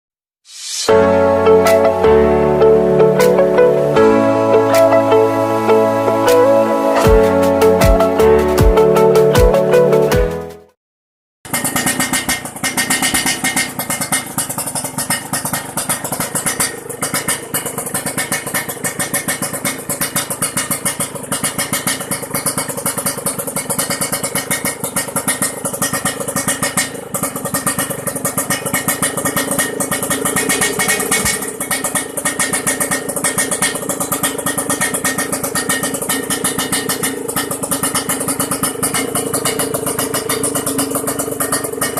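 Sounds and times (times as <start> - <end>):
motorcycle engine idling: 11.5 - 41.9.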